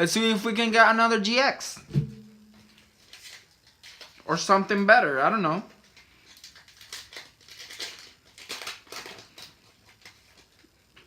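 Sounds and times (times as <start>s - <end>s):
foil wrapper crinkling and tearing: 2.7s - 11.0s.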